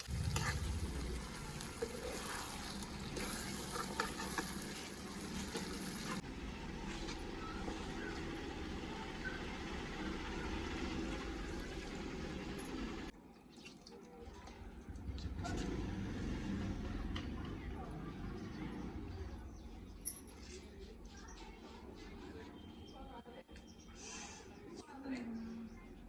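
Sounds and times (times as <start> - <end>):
curry sizzling in a pan: 0.0 - 6.2.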